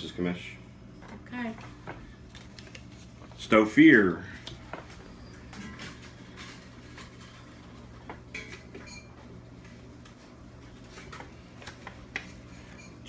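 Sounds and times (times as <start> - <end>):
paper clicks and rustles: 2.2 - 3.4, 9.6 - 12.4.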